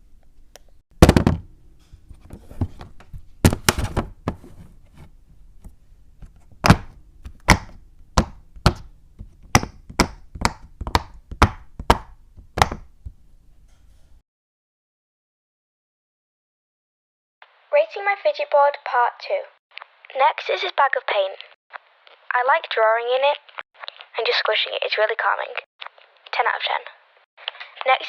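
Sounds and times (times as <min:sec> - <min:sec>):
sharp taps and knocks: 0:06.6 - 0:13.2.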